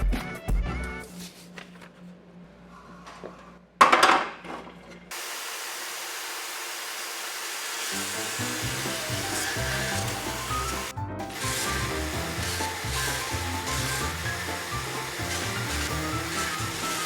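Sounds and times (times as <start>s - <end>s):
power tool hissing: 5.1s - 17.0s.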